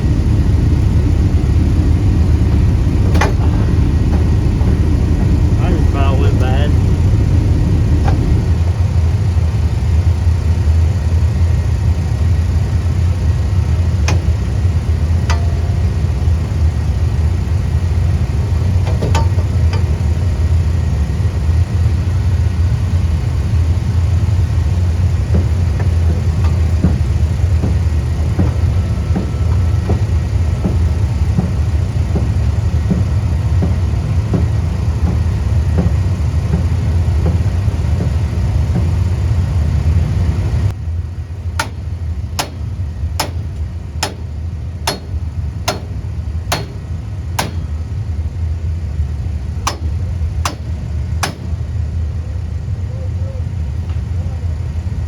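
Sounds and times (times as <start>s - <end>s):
low engine drone: 0.0s - 55.0s
hammer blows on sheet metal: 41.6s - 47.9s.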